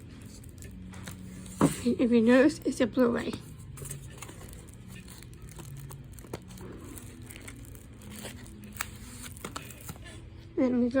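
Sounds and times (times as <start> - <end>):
plastic shrink wrap crinkling: 3.6 - 10.2.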